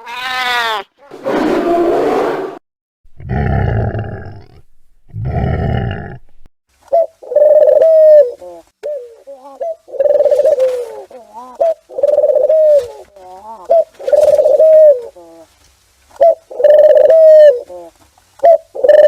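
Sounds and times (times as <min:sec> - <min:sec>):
rough roar-like animal calls: 0:01.1 - 0:02.6, 0:03.2 - 0:06.4
pigeon cooing: 0:06.9 - 0:15.5, 0:16.2 - 0:19.0.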